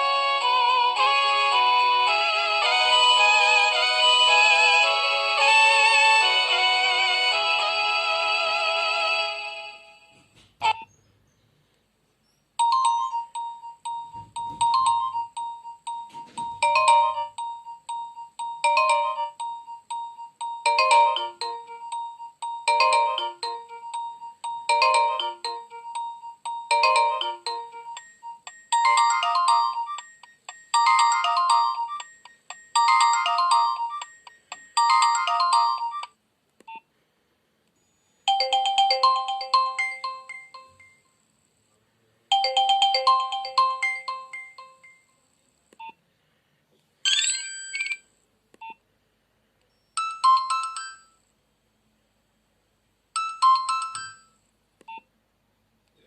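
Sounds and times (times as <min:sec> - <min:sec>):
synthesized phone ringtone: 0:00.0 - 0:07.7, 0:12.6 - 0:36.2, 0:38.3 - 0:41.0, 0:42.3 - 0:45.1, 0:47.1 - 0:48.1, 0:50.0 - 0:51.2, 0:53.2 - 0:54.4.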